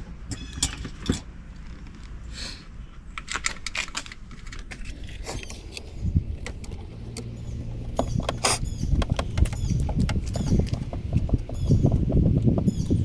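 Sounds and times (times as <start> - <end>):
parts and tools clicking: 3.4 - 12.7.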